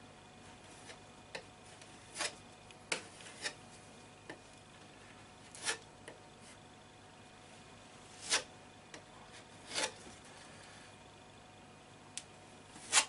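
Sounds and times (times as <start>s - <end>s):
tool scrapes: 2.0s - 3.6s, 5.5s - 6.6s, 8.1s - 8.5s, 9.2s - 10.5s, 12.8s - 13.0s.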